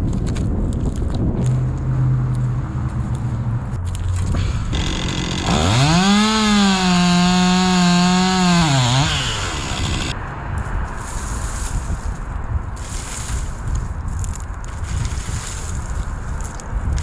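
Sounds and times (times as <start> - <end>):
chainsaw engine revving: 4.7 - 10.2.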